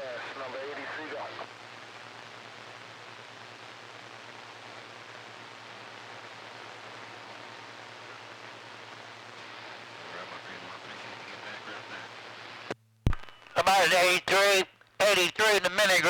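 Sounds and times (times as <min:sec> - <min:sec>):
faint voice over radio: 0:00.0 - 0:01.5, 0:09.9 - 0:12.4, 0:13.6 - 0:16.0
radio static hiss: 0:00.0 - 0:16.0.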